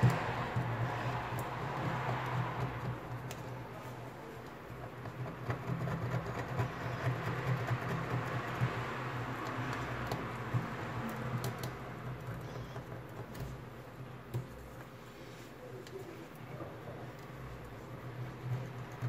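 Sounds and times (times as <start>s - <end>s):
small hand tools clicking and tapping: 0.0s - 15.0s.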